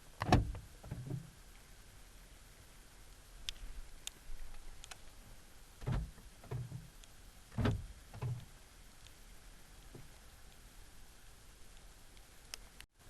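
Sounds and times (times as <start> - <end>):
car door lock clunking: 7.6 - 8.4.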